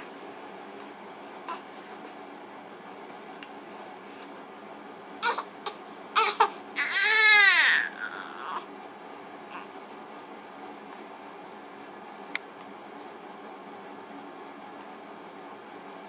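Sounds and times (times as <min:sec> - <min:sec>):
baby fussing and crying: 0:05.2 - 0:08.7.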